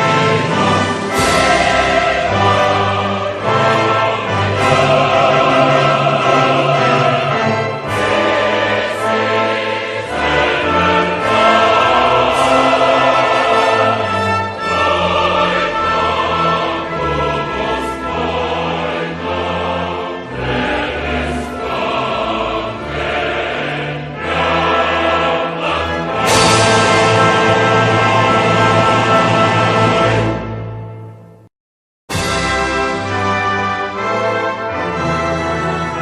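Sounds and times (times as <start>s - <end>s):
choir singing sustained chords: 0.0s - 31.1s
orchestra playing: 0.0s - 31.4s, 32.1s - 36.0s.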